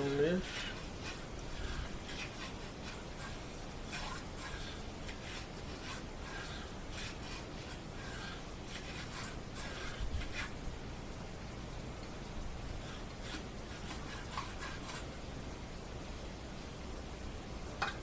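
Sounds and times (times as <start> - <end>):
hand plane shaving wood: 0.0 - 10.6.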